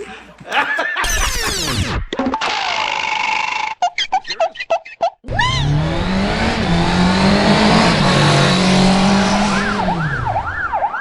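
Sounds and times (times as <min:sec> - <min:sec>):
car engine running hard: 0:05.3 - 0:10.2
siren wailing: 0:09.2 - 0:11.0.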